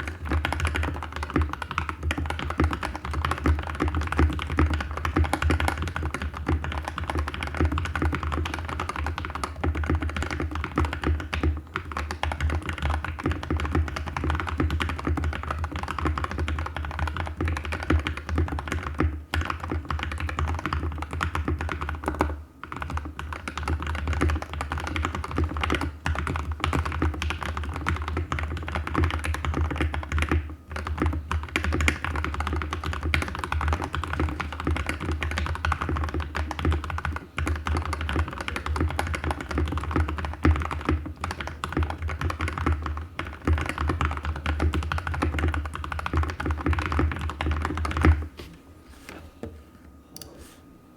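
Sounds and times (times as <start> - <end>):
fast mechanical keyboard typing: 0.0 - 48.3
steady low hum: 32.0 - 50.9.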